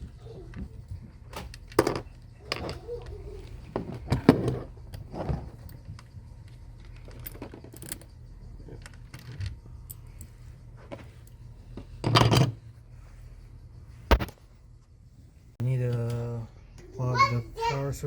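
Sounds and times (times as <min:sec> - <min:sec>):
small hardware clicking and clattering: 0:00.5 - 0:12.6.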